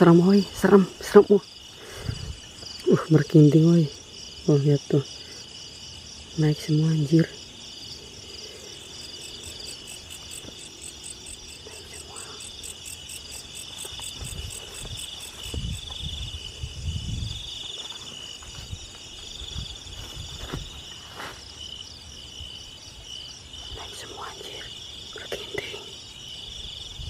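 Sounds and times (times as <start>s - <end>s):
insect chorus trilling: 0.0s - 27.0s
low rumbles and thuds: 14.1s - 17.5s.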